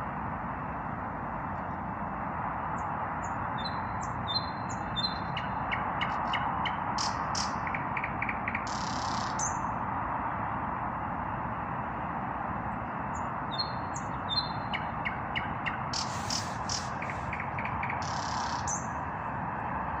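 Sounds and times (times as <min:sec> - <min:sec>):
nightingale singing: 0:02.8 - 0:09.8, 0:13.1 - 0:19.1
steady background rush: 0:13.2 - 0:20.0.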